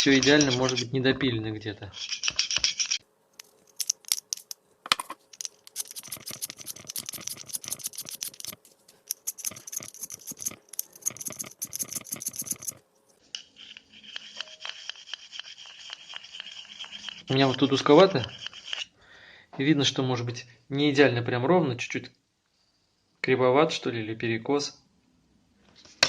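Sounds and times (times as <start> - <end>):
needle file scraping plastic: 5.7 - 12.8.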